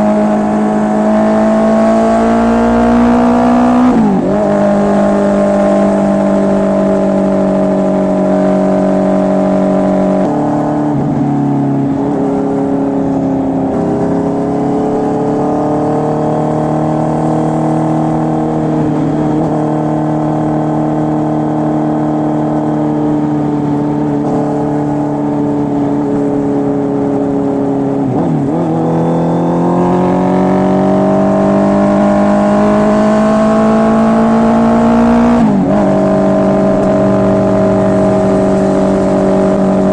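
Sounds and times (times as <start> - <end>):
motorcycle engine running: 0.0 - 28.1, 30.2 - 39.9.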